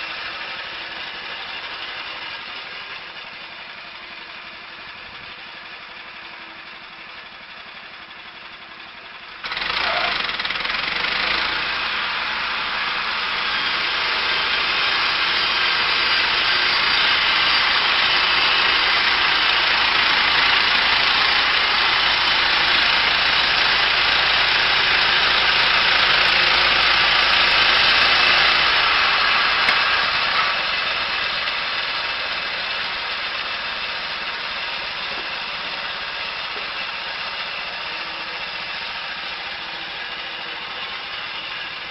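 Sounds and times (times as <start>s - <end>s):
wood-cutting machine running: 0.0s - 41.9s.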